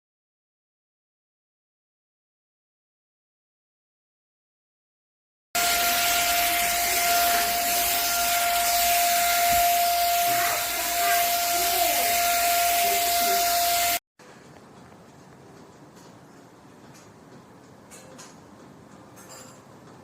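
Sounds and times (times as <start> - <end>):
handheld vacuum cleaner running: 5.6 - 14.0.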